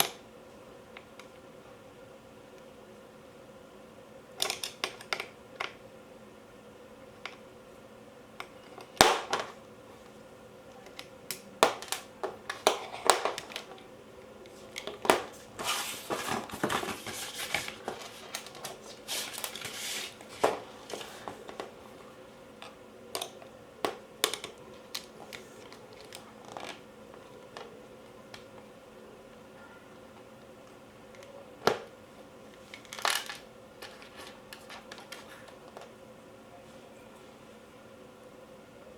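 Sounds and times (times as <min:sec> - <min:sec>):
scraping and rustling: 0:11.9 - 0:22.8.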